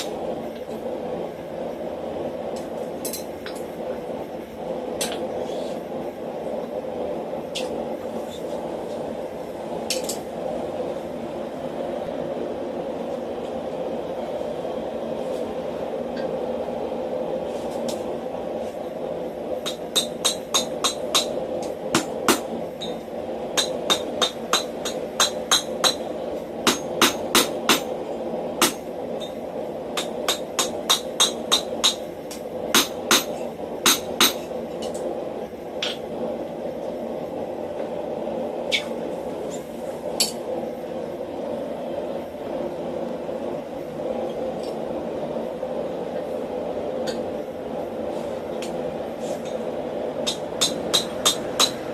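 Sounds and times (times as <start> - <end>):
steady rushing noise: 0.0 - 51.9
hammer striking iron on anvil: 19.6 - 21.4, 23.6 - 26.0, 26.6 - 27.9, 30.0 - 32.0, 32.8 - 34.4, 50.2 - 51.8.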